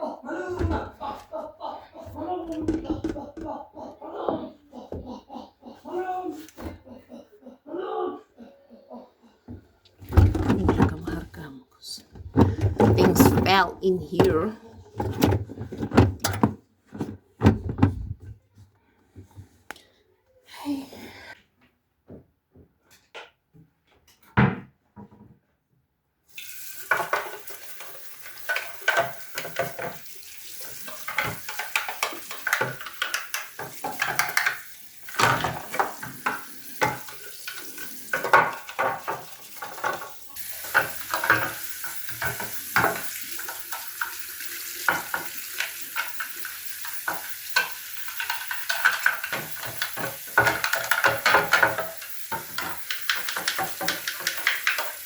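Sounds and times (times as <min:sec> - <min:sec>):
food sizzling in a frying pan: 0:26.3 - 0:55.0.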